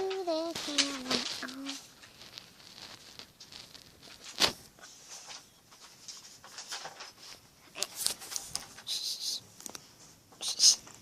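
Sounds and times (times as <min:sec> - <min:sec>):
soft rustling: 0:00.0 - 0:08.9.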